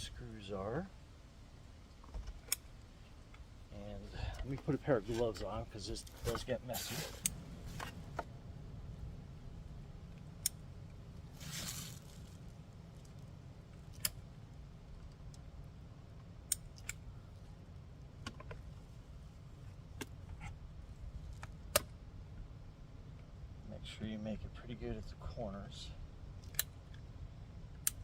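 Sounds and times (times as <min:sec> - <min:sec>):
steady low hum: 0:00.0 - 0:28.0
gloves rustling: 0:04.0 - 0:08.4, 0:11.1 - 0:14.0
sharp clicks and snaps: 0:10.1 - 0:10.6, 0:13.8 - 0:14.3, 0:16.5 - 0:17.1, 0:26.4 - 0:27.0, 0:27.8 - 0:28.0.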